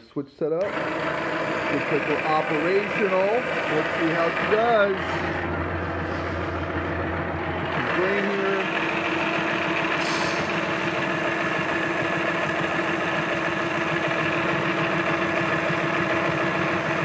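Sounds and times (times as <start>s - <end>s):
grain grinder running: 0.6s - 17.0s.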